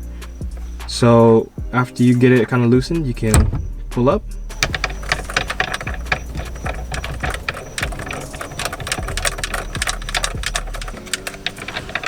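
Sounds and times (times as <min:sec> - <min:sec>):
torque wrench ratchet clicking: 0:04.6 - 0:12.0.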